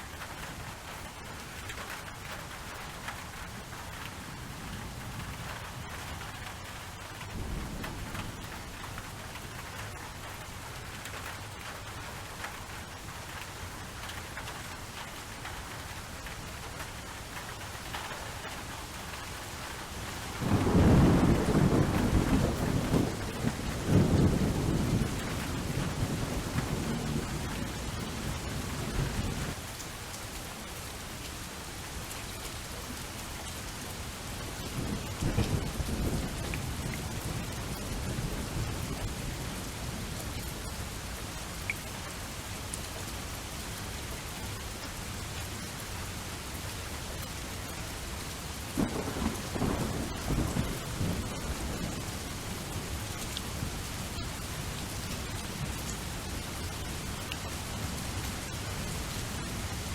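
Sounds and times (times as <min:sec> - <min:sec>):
steady rain: 0:00.0 - 0:59.9
thunder rolling: 0:20.4 - 0:27.5, 0:48.8 - 0:52.0.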